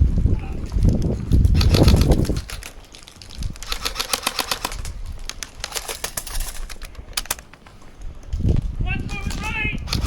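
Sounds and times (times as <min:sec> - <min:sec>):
game gun rapid clicking shots: 0:01.6 - 0:02.7, 0:03.6 - 0:04.9.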